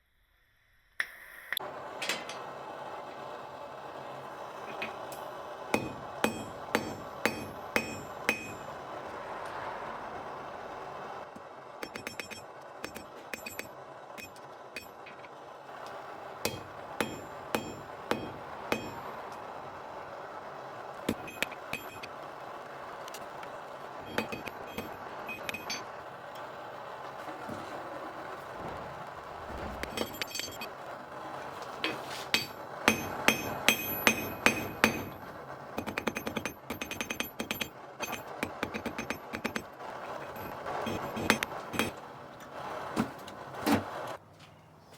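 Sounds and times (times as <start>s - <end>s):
small hammer striking metal: 4.7s - 8.8s, 11.8s - 15.3s, 16.4s - 19.5s, 21.1s - 22.1s, 24.0s - 25.9s, 32.3s - 42.0s.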